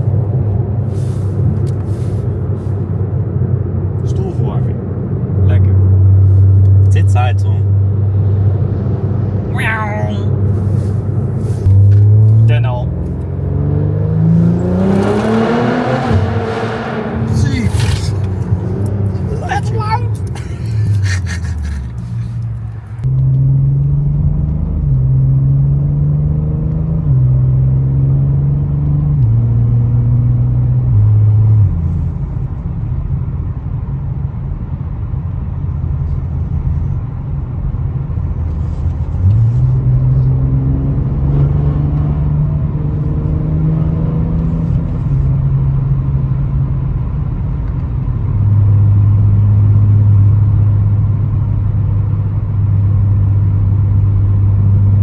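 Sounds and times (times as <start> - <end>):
car engine accelerating through gears: 10.3 - 32.6, 38.4 - 55.0.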